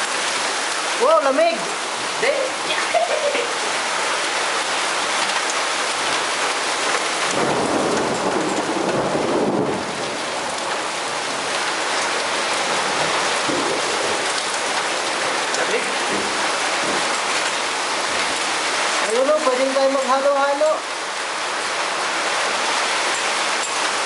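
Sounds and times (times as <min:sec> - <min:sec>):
heavy rain falling: 0:00.0 - 0:24.0.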